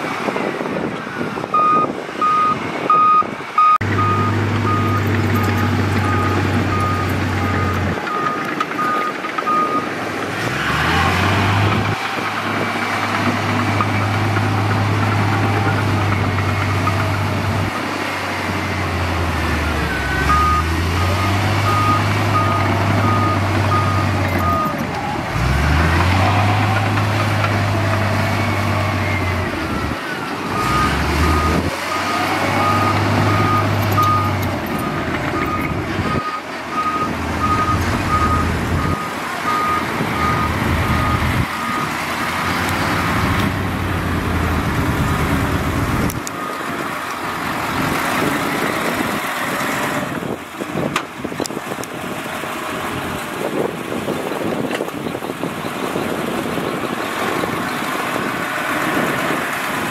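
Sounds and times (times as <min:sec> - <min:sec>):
diesel machinery engines droning: 0:00.0 - 0:59.9
back-up alarm beeping: 0:01.6 - 0:09.9.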